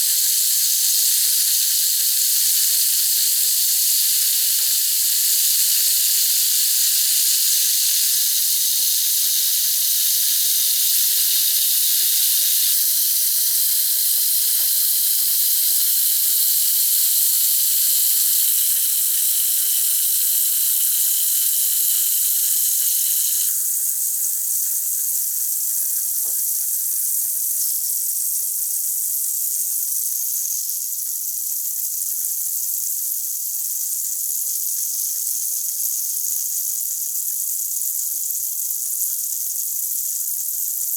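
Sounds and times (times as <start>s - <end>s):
tablet fizzing in water: 0.1s - 25.4s.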